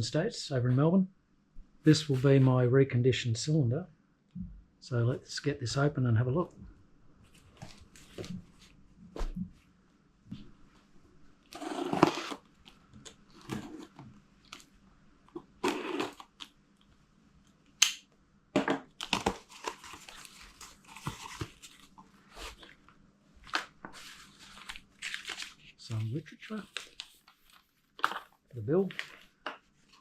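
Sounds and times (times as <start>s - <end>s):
cardboard packaging tearing and crinkling: 11.5s - 12.4s, 15.6s - 16.4s, 19.0s - 22.7s, 24.0s - 25.6s.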